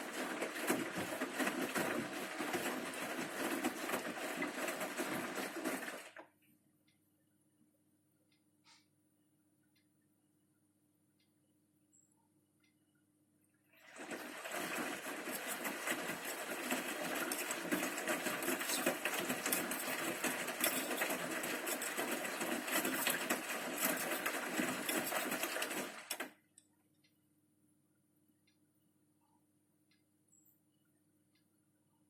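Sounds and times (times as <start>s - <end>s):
clothes and water tumbling: 0.0s - 6.2s, 13.8s - 26.3s
washing machine motor running: 0.0s - 6.2s, 13.8s - 26.4s.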